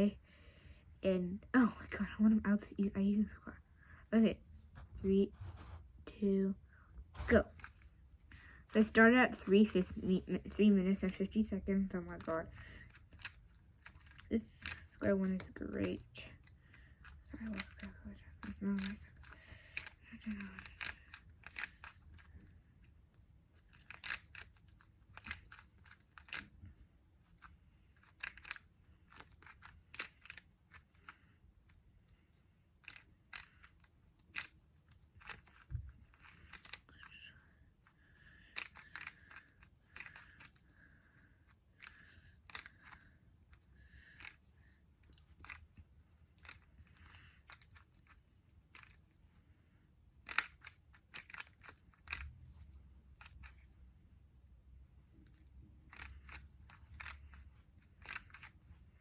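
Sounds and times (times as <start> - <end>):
plastic puzzle clicks: 10.9 - 23.0, 23.6 - 31.3, 32.8 - 37.2, 38.4 - 40.8, 41.7 - 49.2, 50.1 - 53.7, 55.2 - 59.0.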